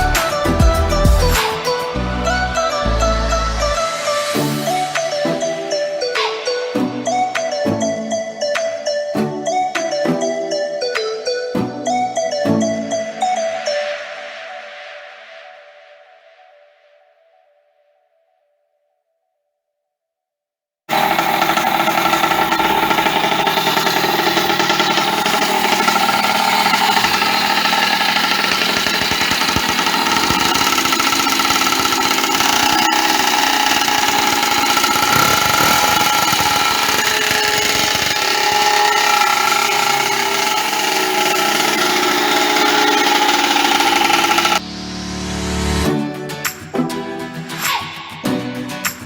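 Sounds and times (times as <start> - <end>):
small kart engine running: 20.9 - 44.6.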